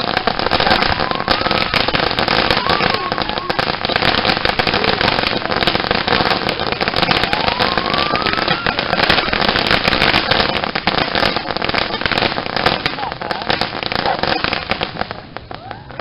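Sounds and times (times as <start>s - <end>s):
firework fountain hissing: 0.0s - 16.0s
rapid crackling: 0.0s - 16.0s
rising whistle: 7.0s - 9.4s.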